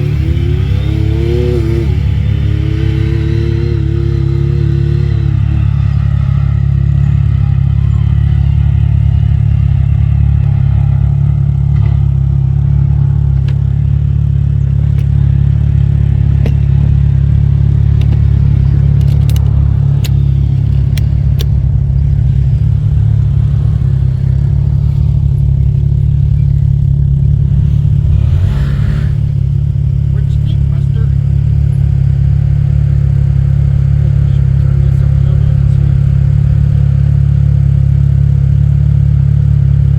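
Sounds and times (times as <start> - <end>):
atv engine running: 0.0 - 39.9
sharp clicks or rattles: 18.9 - 21.6.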